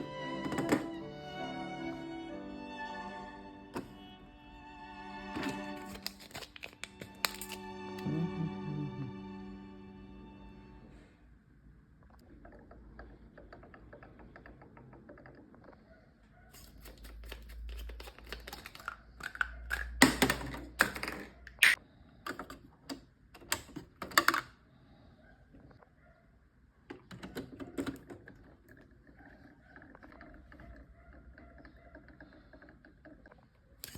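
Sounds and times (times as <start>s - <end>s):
packaging crinkling: 5.8s - 7.6s, 16.6s - 19.8s
scattered clicks and knocks: 12.4s - 15.8s.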